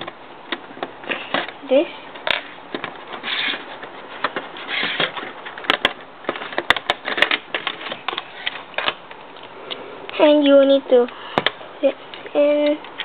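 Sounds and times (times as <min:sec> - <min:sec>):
plastic pieces rubbing and scraping: 0:00.0 - 0:09.2.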